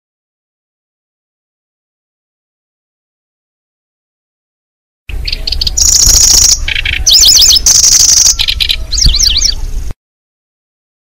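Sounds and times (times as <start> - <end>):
songbird chirps and trills: 5.1 - 9.9.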